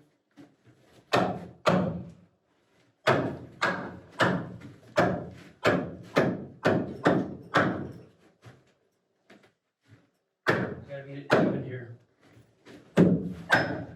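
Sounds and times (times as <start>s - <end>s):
heavy thuds knocking wood: 13.0s - 13.8s.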